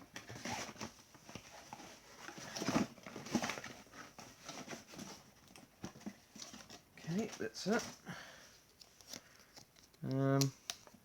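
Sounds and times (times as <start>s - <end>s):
paper and plastic rustling: 0.2s - 8.0s.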